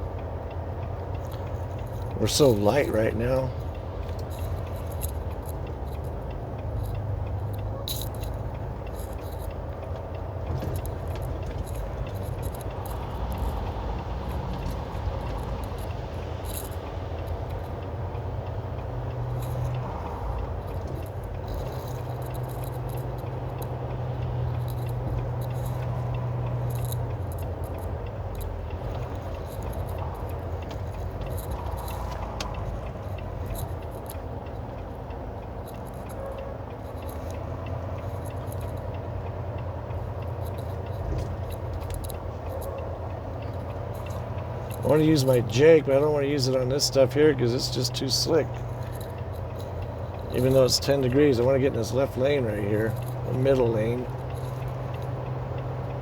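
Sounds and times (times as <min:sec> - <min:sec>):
truck engine and road drone: 0:00.0 - 0:56.0
cab rattles and clinks: 0:01.2 - 0:18.3, 0:19.3 - 0:56.0.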